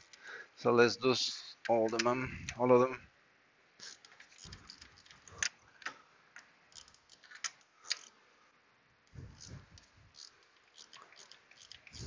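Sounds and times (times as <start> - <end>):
hand ratchet clicking: 3.8 - 6.0, 6.7 - 8.1, 9.1 - 12.0.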